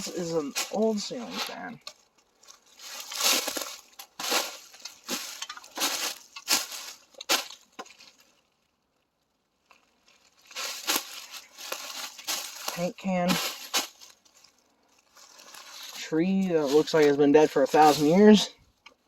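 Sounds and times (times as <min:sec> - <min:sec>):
footsteps crunching through dry leaves: 0:00.0 - 0:08.8, 0:09.5 - 0:18.4.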